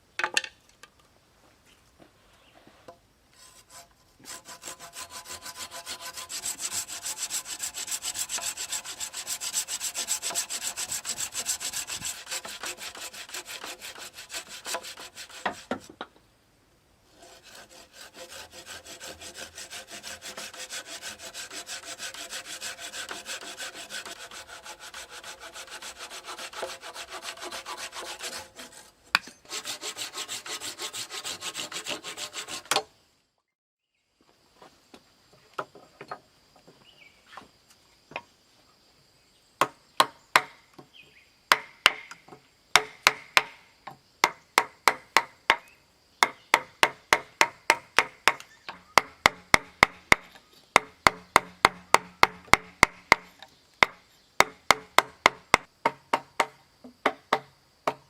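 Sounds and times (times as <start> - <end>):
hand saw cutting wood: 3.4 - 16.0, 17.1 - 32.9.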